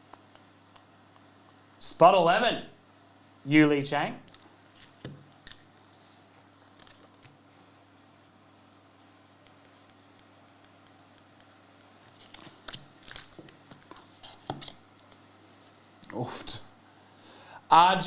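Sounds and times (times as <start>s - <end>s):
faint steady hum: 0.0s - 18.0s
cards and plastic holders handled: 4.3s - 5.8s, 6.4s - 8.0s, 8.8s - 16.1s.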